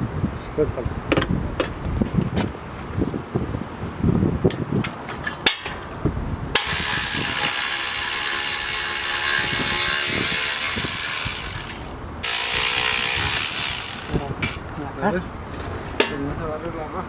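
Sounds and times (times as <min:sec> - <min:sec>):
mechanical ratcheting: 0:06.6 - 0:14.4.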